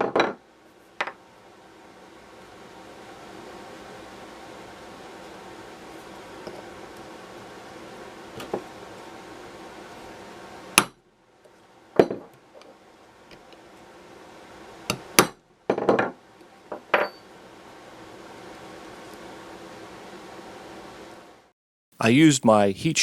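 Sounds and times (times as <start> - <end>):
background hiss: 22.0 - 23.0.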